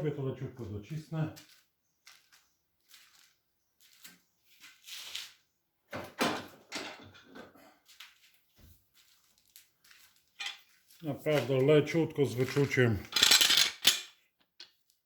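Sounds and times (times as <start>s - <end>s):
tools handled on a workbench: 5.9s - 8.1s, 10.3s - 10.8s, 12.5s - 14.8s.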